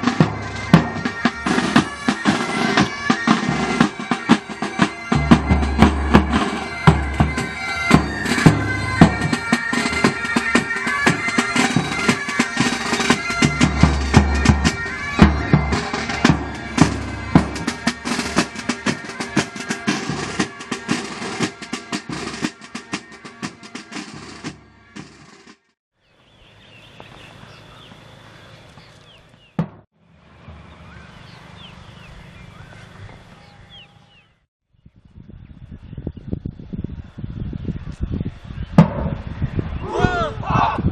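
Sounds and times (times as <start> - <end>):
pipe band playing: 0.0 - 25.8
faint outdoor background noise: 0.0 - 34.4.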